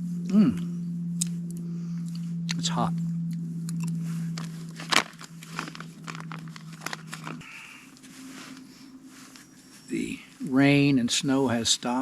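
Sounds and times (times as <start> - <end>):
steady low hum: 0.0 - 12.0
pouch crinkling: 3.8 - 8.7.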